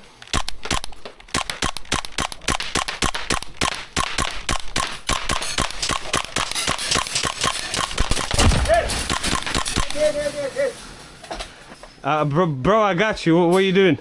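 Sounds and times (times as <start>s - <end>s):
airsoft guns firing: 0.0s - 10.3s.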